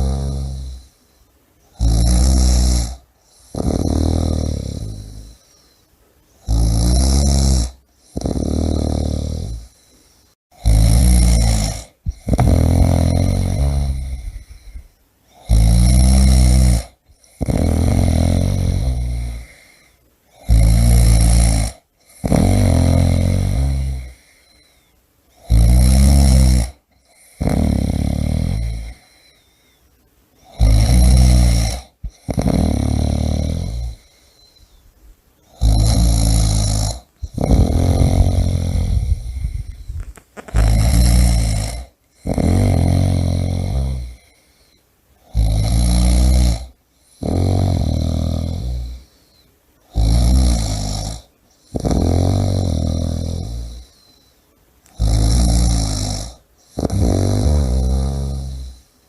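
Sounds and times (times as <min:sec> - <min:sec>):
person snoring: 0:00.0 - 0:01.0, 0:01.7 - 0:05.8, 0:06.4 - 0:29.8, 0:30.4 - 0:34.8, 0:35.4 - 0:59.0.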